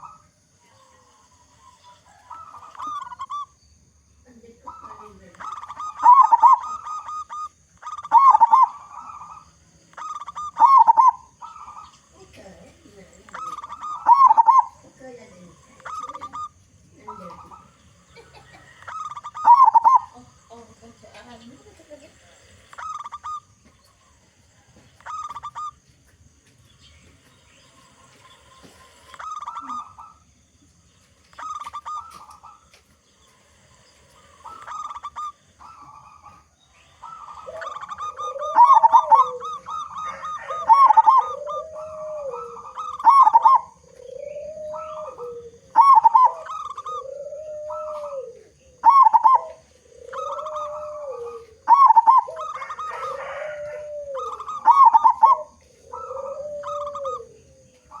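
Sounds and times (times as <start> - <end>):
dove cooing: 0.0 - 58.0.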